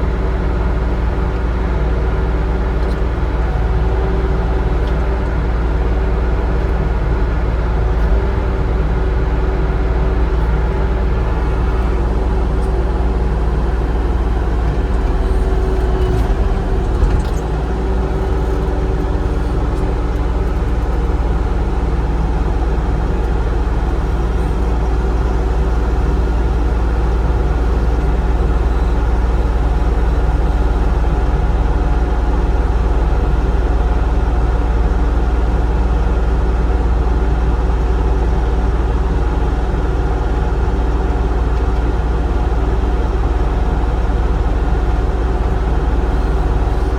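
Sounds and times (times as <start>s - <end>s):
excavator diesel engine running: 0.0s - 46.9s.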